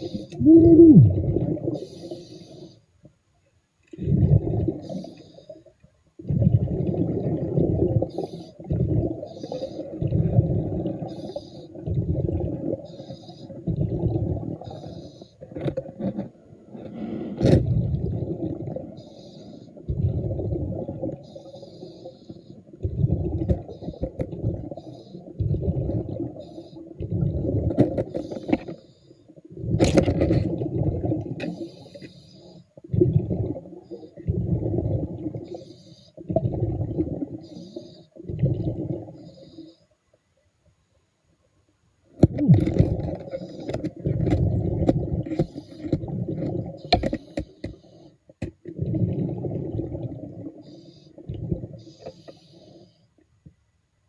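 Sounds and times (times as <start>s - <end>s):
diver exhaling bubbles underwater: 0.0s - 2.0s, 4.0s - 5.1s, 6.2s - 12.9s, 13.5s - 19.0s, 19.8s - 21.3s, 22.8s - 28.3s, 32.8s - 35.6s, 36.2s - 39.3s, 42.2s - 46.9s, 48.7s - 51.8s.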